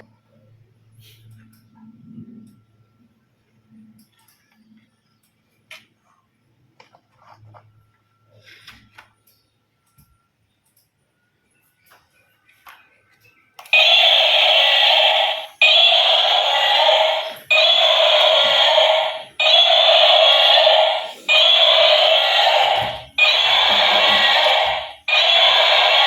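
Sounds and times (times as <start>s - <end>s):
loud electronic tone: 13.8s - 26.0s.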